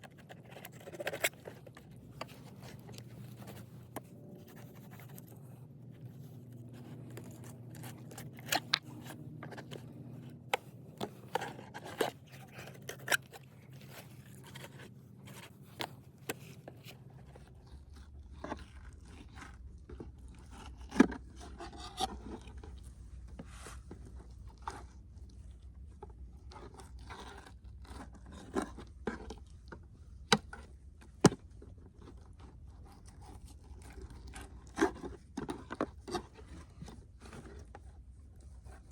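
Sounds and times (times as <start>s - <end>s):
faint steady hum: 0.0s - 38.9s.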